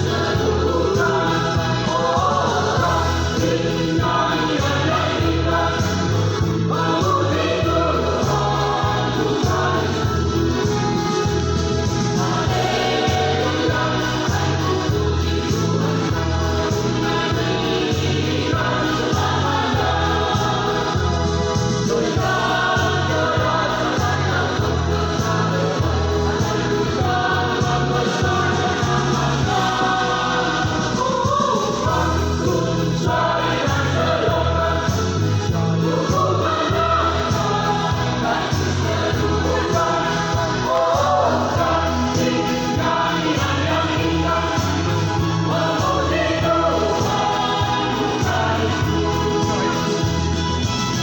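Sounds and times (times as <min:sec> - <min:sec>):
accompaniment with low beat: 0:00.0 - 0:51.0
bass line: 0:00.0 - 0:51.0
choir singing: 0:00.0 - 0:51.0.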